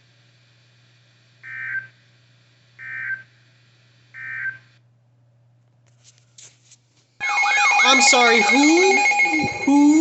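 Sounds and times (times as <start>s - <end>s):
buzzy digital tone bursts: 7.8s - 10.0s.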